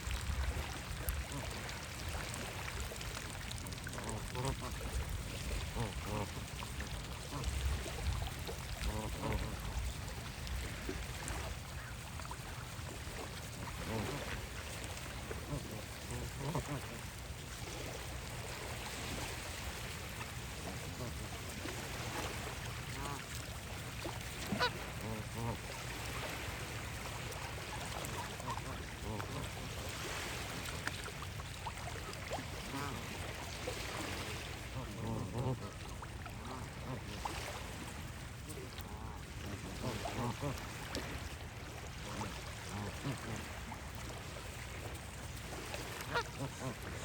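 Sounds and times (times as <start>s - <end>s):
lake water: 0.0s - 47.0s
geese honking: 24.5s - 25.6s, 46.0s - 46.9s.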